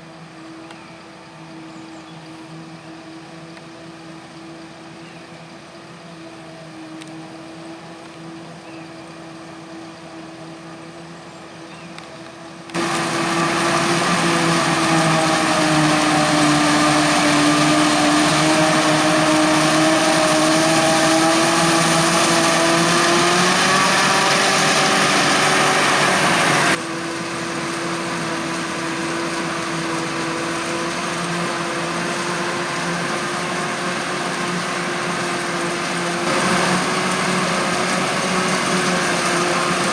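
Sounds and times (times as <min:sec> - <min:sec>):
heavy farm machinery engines: 0:12.7 - 0:39.9
loud engine dipping and rising: 0:12.8 - 0:39.9.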